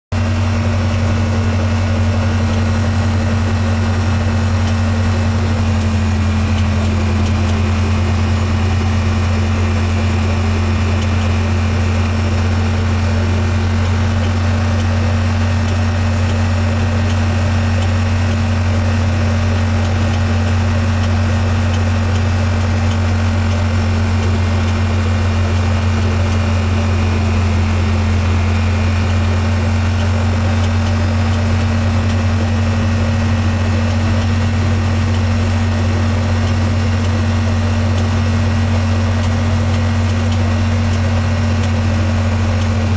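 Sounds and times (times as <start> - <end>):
engine running steady drone: 0.1 - 42.9.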